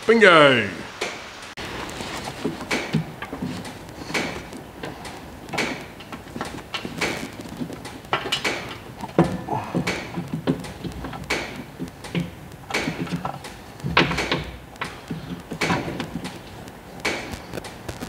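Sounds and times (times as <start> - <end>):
hand tools clicking and scraping: 1.0 - 18.0.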